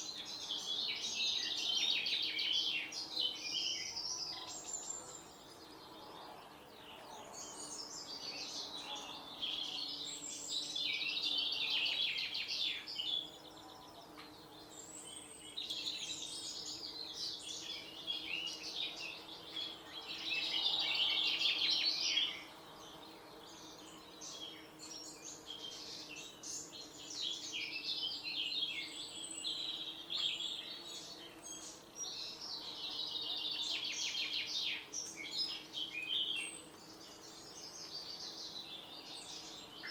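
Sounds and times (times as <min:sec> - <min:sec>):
birds singing: 0:00.0 - 0:39.9.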